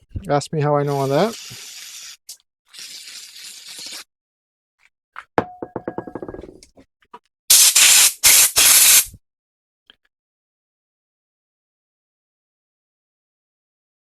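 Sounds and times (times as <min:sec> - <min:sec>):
hissing blasts of compressed air: 0:07.5 - 0:09.2.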